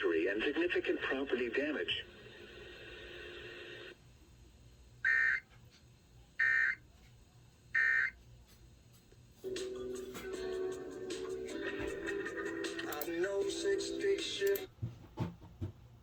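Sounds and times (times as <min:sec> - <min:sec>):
music: 0:09.4 - 0:14.7.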